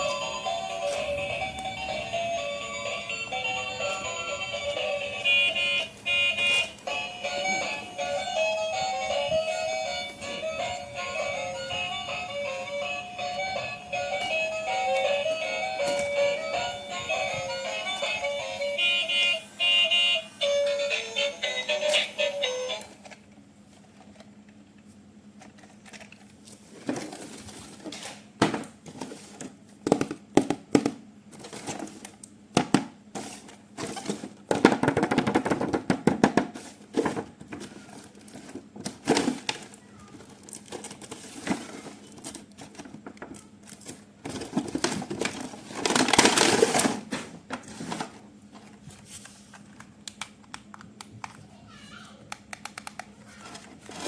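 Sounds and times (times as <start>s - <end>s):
plastic toys and packaging handled: 21.7s - 50.2s, 52.8s - 54.0s.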